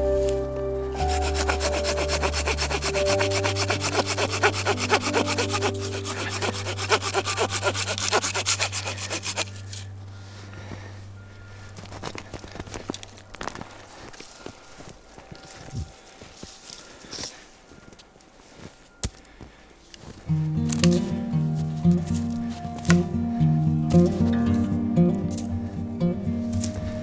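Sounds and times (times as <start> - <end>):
soft background music: 0.0 - 27.0
hand saw cutting wood: 1.0 - 9.8.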